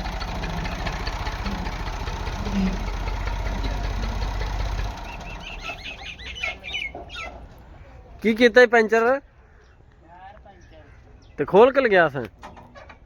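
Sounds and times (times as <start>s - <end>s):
chickens clucking: 0.0s - 7.9s
engine idling: 0.0s - 7.9s.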